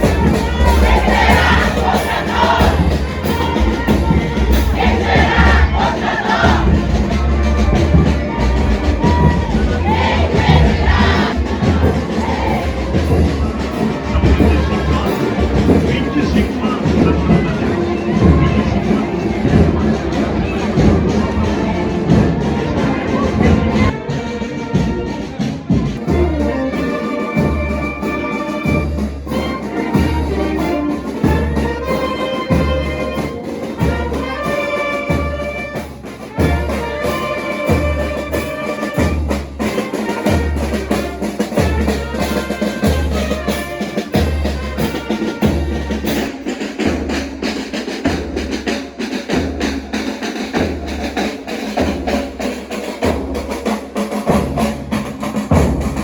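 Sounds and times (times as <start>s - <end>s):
bass drum beat: 0.0s - 17.6s
marching band brass: 0.0s - 56.0s.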